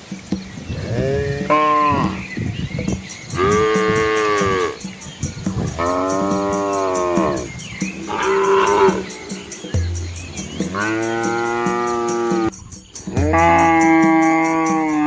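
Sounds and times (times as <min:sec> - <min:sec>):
cattle mooing: 0:00.8 - 0:02.2, 0:03.4 - 0:04.8, 0:05.8 - 0:07.5, 0:08.1 - 0:09.3, 0:10.6 - 0:12.5.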